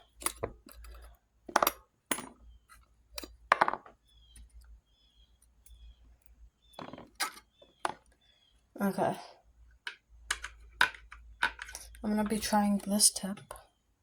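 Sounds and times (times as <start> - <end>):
small metal parts clinking: 0.0 - 4.7.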